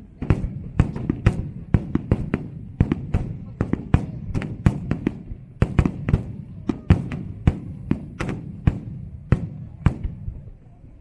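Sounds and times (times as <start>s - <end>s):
fireworks bursting: 0.0s - 10.6s.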